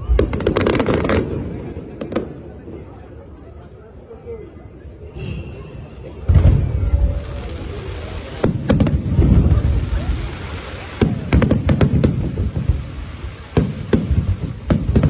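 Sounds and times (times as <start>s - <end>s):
low booming rumble: 5.4s - 10.4s.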